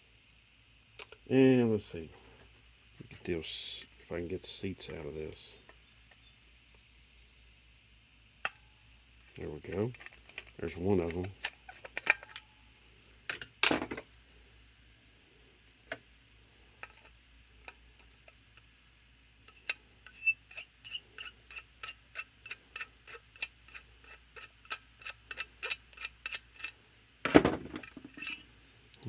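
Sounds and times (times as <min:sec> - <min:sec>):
hand tools clicking on metal: 0:19.5 - 0:26.8
metal parts clattering: 0:24.4 - 0:28.5.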